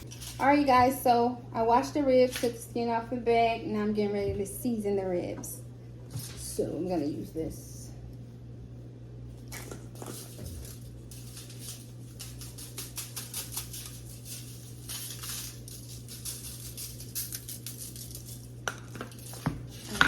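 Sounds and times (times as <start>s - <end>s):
low electrical hum: 0.0s - 20.0s
spice shaker rattling: 9.5s - 20.0s.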